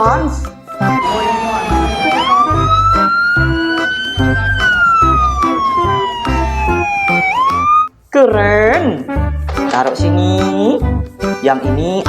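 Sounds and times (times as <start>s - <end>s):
music with steady beat: 0.0s - 12.0s
ambulance siren wailing: 0.6s - 7.9s.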